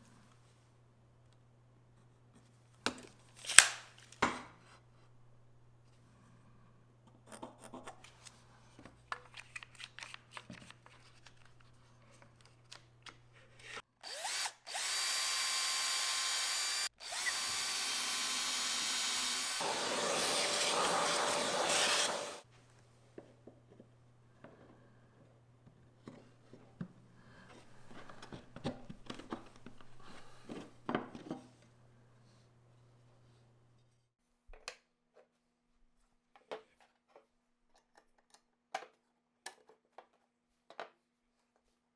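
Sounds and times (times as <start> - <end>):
tools and wood clicking: 2.9 - 4.2
power tool whine: 14.0 - 22.4.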